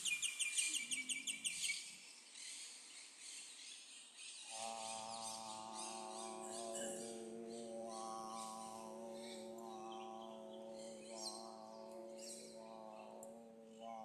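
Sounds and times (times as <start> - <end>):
voices chanting sustained tone: 4.4 - 14.0.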